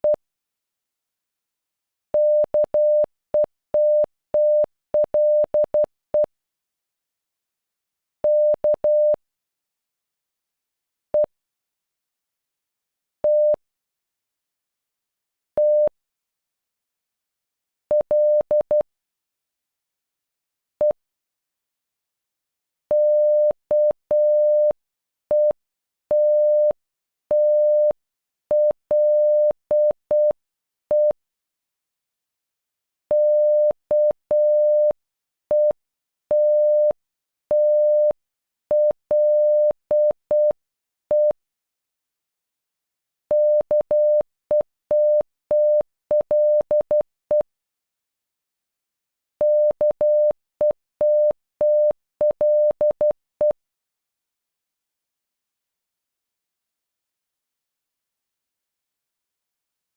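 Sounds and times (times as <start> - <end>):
morse code beeps: 2.2 - 6.3, 8.2 - 9.2, 13.2 - 13.6, 15.6 - 15.9, 22.9 - 24.8, 25.4 - 31.2, 33.1 - 41.4, 43.3 - 47.5, 49.4 - 53.6.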